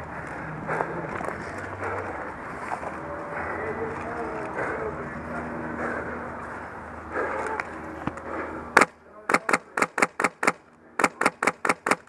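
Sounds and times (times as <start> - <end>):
airsoft gun rapid shots: 8.8 - 12.0.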